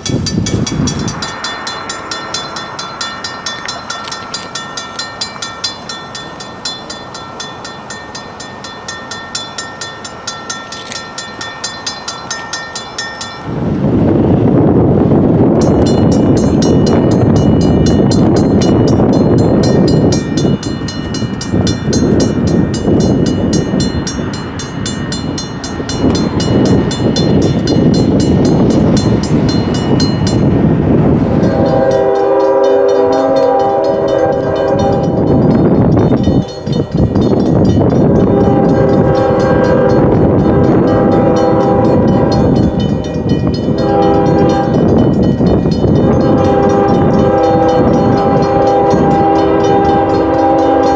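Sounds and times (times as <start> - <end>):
crossing bell ringing: 0.0 - 14.4, 15.4 - 50.9
train rumble: 0.0 - 50.9
train air horn: 31.4 - 35.5, 38.3 - 45.0, 45.9 - 50.9.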